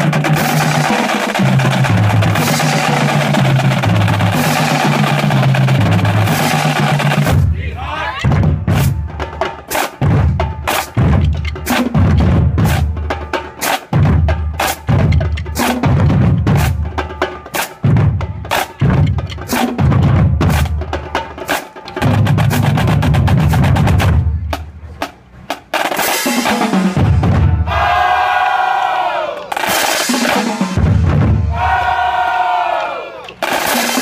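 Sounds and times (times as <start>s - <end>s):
snare drum strokes and rolls: 0.0s - 7.6s, 8.2s - 28.5s, 29.3s - 34.0s
bass drum booms: 8.2s - 9.1s, 26.9s - 27.9s, 30.8s - 31.8s.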